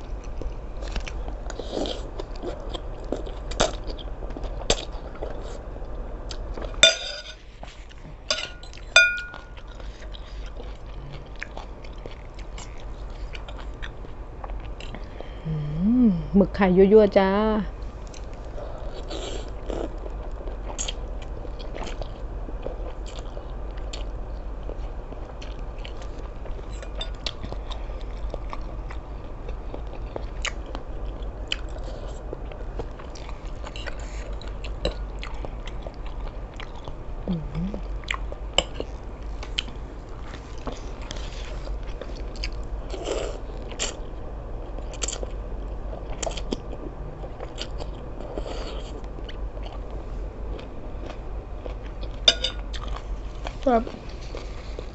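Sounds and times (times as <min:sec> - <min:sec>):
chewing and biting food: 0:00.0 - 0:15.3, 0:18.0 - 0:54.9
steady low hum: 0:00.0 - 0:54.9
person humming: 0:15.4 - 0:16.4, 0:37.2 - 0:37.8.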